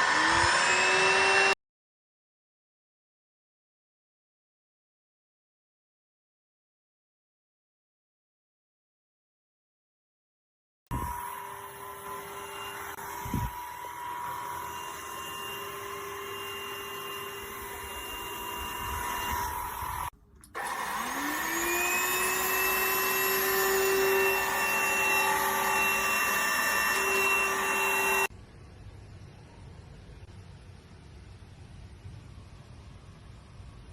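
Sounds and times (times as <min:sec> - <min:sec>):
vacuum cleaner motor whining: 0:00.0 - 0:01.6, 0:10.9 - 0:28.3.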